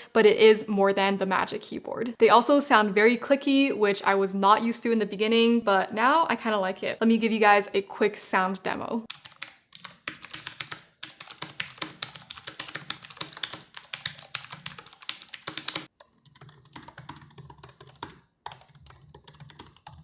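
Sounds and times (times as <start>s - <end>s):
fast clicky keyboard typing: 9.1s - 20.0s.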